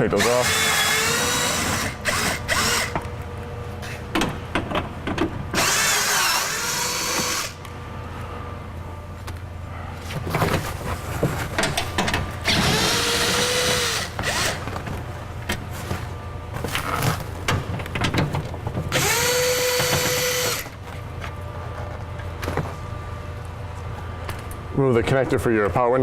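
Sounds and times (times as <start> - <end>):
cordless drill spinning out bolts: 5.6 - 7.6, 12.4 - 14.6, 18.9 - 20.7
clicks and knocks of tool and bolts: 11.2 - 12.6.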